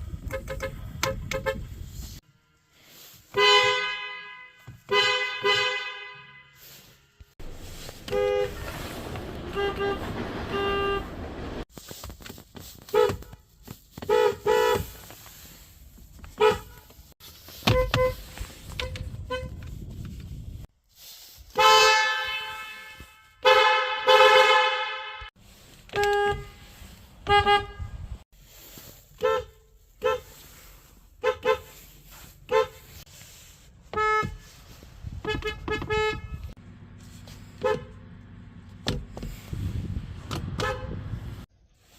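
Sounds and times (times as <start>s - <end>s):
car horns honking: 0.1s - 11.6s, 14.0s - 15.0s, 17.5s - 19.6s, 21.6s - 28.2s, 29.1s - 31.8s, 32.4s - 33.0s, 33.9s - 36.6s, 37.6s - 38.2s, 40.5s - 41.2s.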